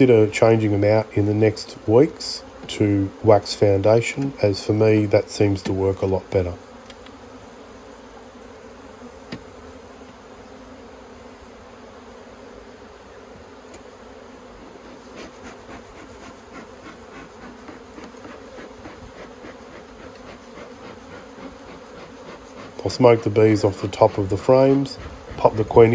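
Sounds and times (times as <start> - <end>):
honeybees buzzing: 0.0 - 25.9
hive frames clicking and knocking: 3.8 - 4.6, 5.2 - 7.2, 9.2 - 10.2, 13.7 - 13.9, 14.6 - 25.9.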